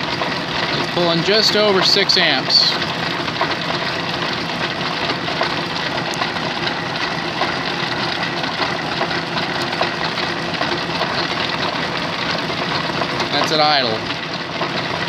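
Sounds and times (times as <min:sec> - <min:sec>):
lathe motor running: 0:00.0 - 0:15.0.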